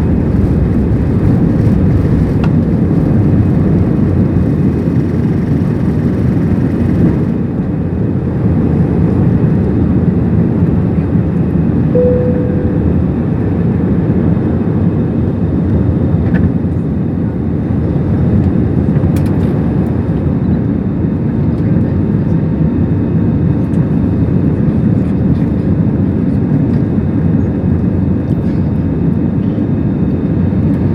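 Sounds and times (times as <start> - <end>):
jet engines roaring in cabin: 0.0 - 30.9
short steady tone: 12.0 - 13.3.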